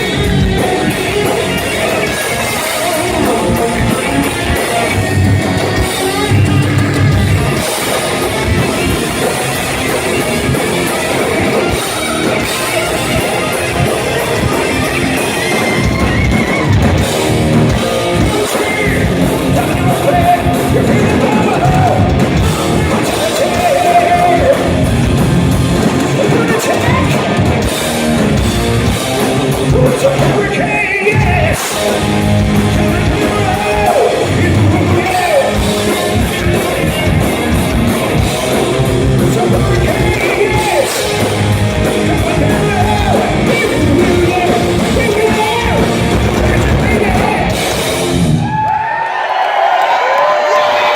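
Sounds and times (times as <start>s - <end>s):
man singing lead vocal: 0.0s - 9.2s, 18.0s - 24.9s, 25.8s - 27.5s, 29.5s - 31.9s, 32.7s - 47.8s
live hard rock band: 0.0s - 50.9s.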